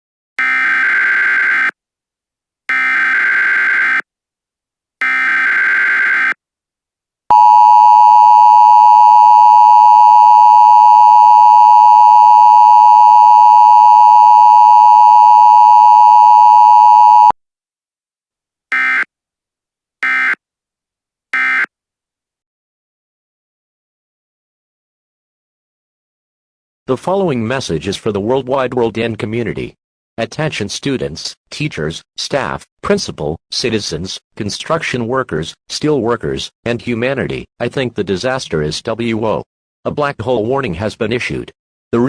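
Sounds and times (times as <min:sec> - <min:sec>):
steady attention tone: 0:07.3 - 0:17.3.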